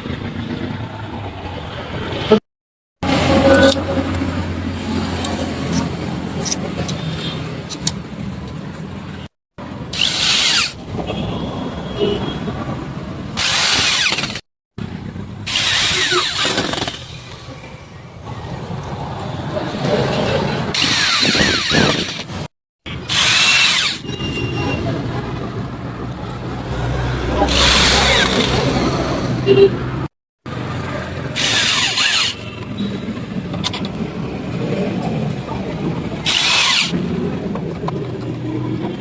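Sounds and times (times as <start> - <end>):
power tool on plywood: 9.9 - 10.8, 13.4 - 14.4, 15.5 - 17.0, 20.7 - 22.3, 23.1 - 24.0, 31.3 - 32.4, 36.2 - 37.0.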